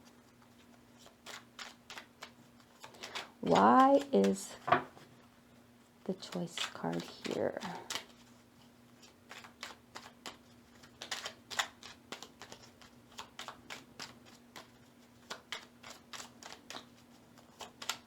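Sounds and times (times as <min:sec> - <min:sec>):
cards being shuffled: 0:00.3 - 0:05.0, 0:06.1 - 0:18.0.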